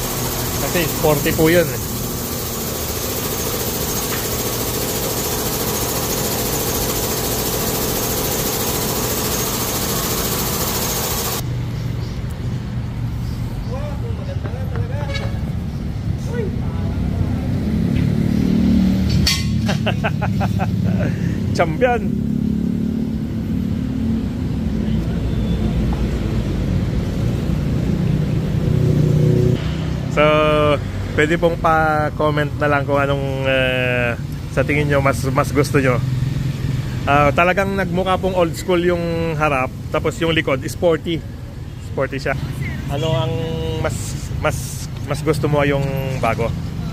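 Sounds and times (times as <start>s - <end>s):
low mechanical hum: 0.0s - 11.4s.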